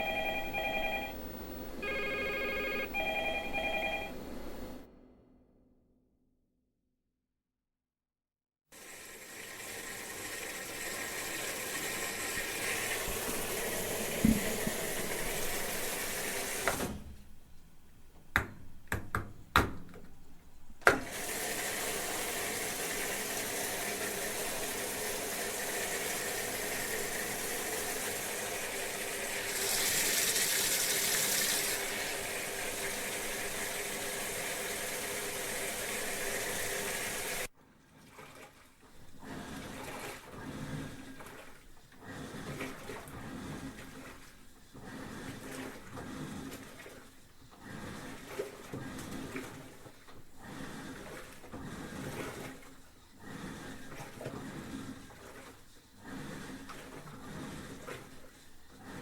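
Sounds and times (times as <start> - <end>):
water running from tap: 8.8 - 16.8, 21.1 - 37.5.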